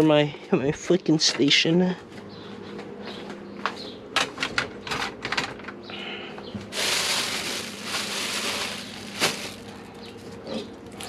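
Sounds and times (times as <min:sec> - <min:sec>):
faint steady hum: 0:02.1 - 0:11.0.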